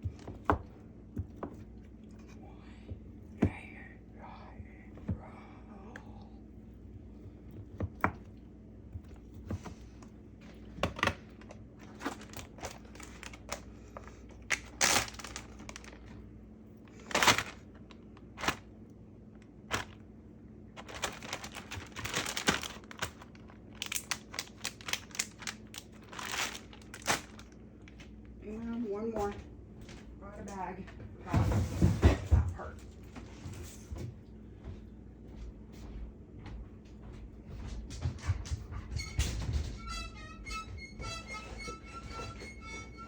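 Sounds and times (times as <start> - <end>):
plastic bags crinkling: 10.4 - 18.7, 19.7 - 20.0, 20.7 - 28.3.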